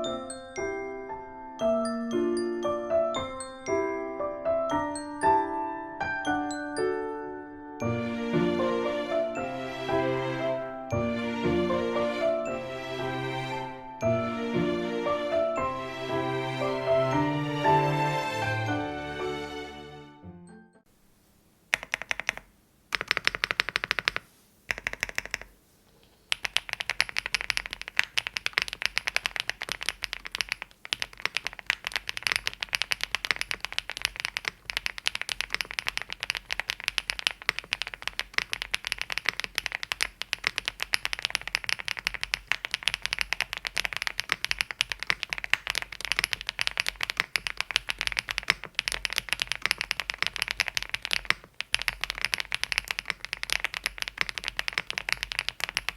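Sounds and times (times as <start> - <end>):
typing on mechanical keyboard: 21.7 - 25.5, 26.3 - 55.9.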